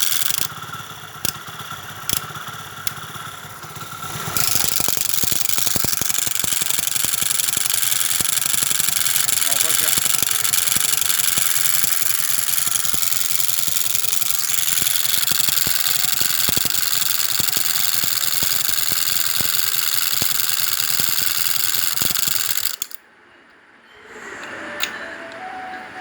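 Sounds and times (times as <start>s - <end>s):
motorcycle engine idling: 0.0s - 20.4s
rapid clicking and knocking: 0.0s - 23.0s.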